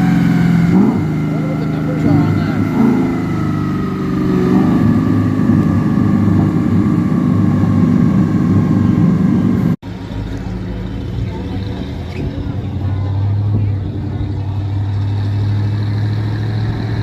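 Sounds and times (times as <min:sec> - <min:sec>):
high whine falling in pitch: 0:00.0 - 0:09.8
car engine running hard: 0:00.0 - 0:17.0.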